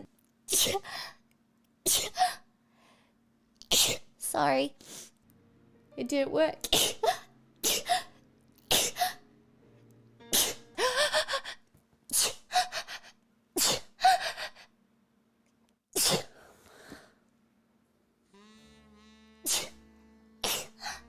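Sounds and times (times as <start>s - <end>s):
person sneezing: 8.7s - 9.2s, 13.6s - 14.0s, 16.0s - 16.5s, 19.5s - 19.8s.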